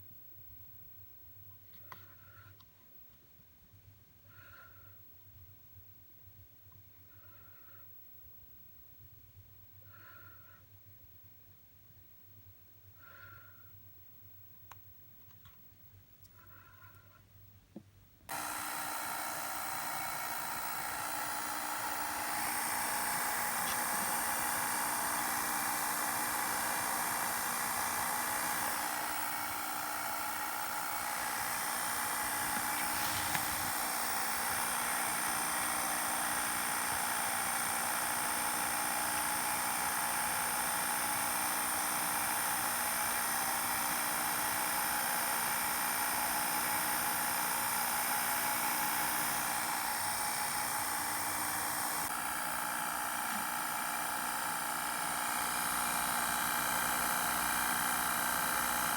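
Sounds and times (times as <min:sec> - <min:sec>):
mechanical whir with hiss: 0:27.2 - 0:35.0.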